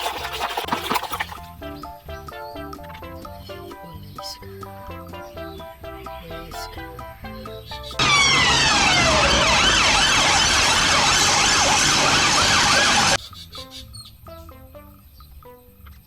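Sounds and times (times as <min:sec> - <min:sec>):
siren-like wailing tones: 0:08.0 - 0:13.2.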